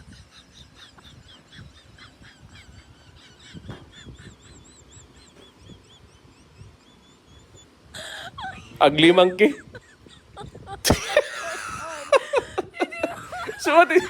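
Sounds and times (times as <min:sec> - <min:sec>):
faint high bird chirps: 0:00.0 - 0:08.8.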